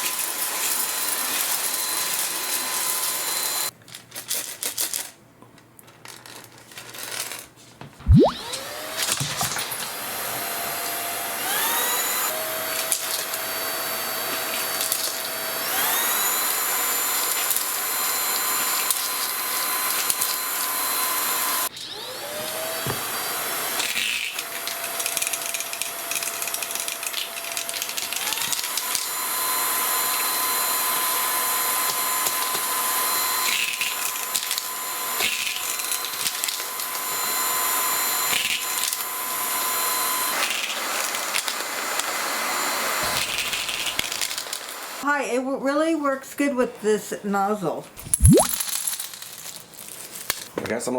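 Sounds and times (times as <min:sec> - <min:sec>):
vacuum motor whine: 0:00.7 - 0:03.7, 0:08.1 - 0:26.0, 0:27.4 - 0:45.0
small metal items rattling in vacuum: 0:06.0 - 0:07.5, 0:48.6 - 0:50.5.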